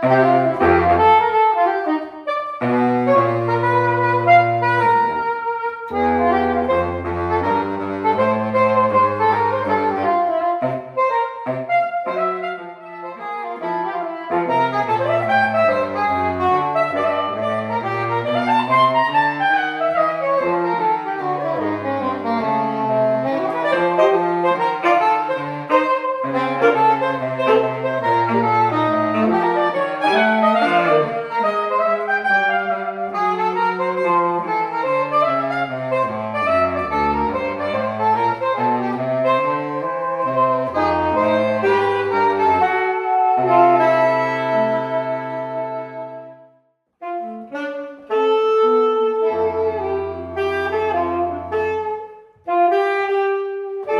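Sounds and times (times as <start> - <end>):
saxophone quartet playing jazz: 0.0 - 46.4, 47.0 - 53.9.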